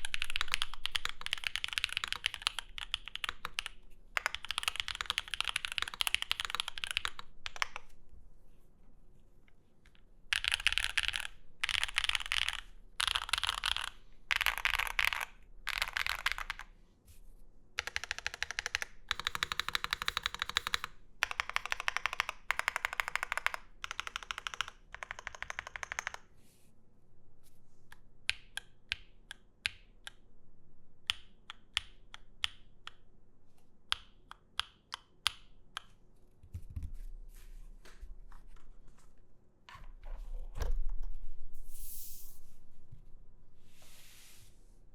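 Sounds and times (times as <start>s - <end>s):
mechanical keyboard typing: 0.0s - 7.9s, 10.3s - 16.7s, 17.8s - 26.2s.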